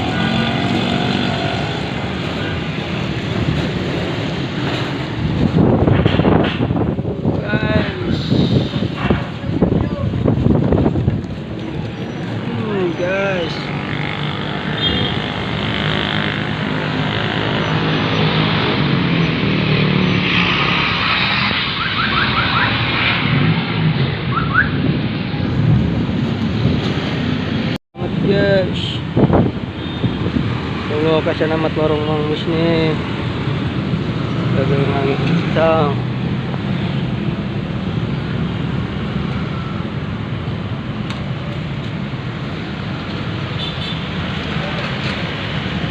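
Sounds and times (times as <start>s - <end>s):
wind gusting against microphone: 0.0s - 45.9s.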